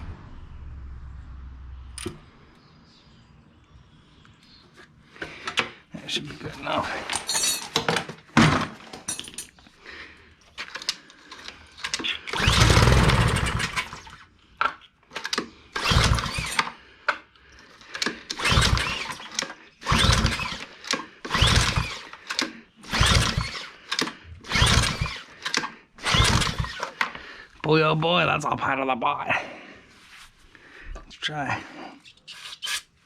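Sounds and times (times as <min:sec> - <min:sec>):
small engine pull-start attempts: 0:10.5 - 0:14.2, 0:15.1 - 0:16.8, 0:17.7 - 0:27.2.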